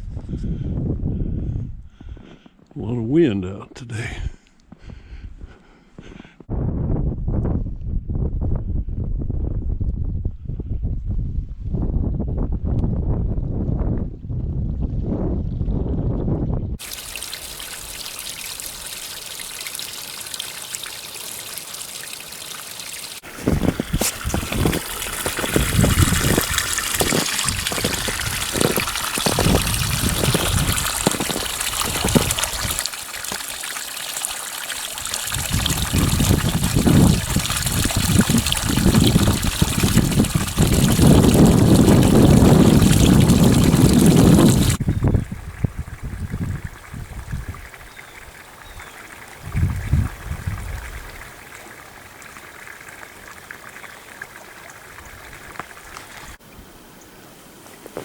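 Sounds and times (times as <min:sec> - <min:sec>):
wind buffeting microphone: 0:00.0 - 0:02.4, 0:06.5 - 0:17.9, 0:23.2 - 0:32.8, 0:35.0 - 0:51.4
creek water running: 0:16.8 - 0:58.0.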